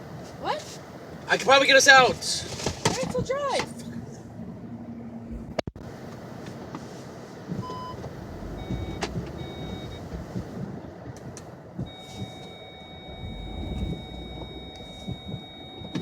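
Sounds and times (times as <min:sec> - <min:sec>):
car engine running under load: 0:00.0 - 0:16.0
short high electronic tones: 0:13.0 - 0:16.0.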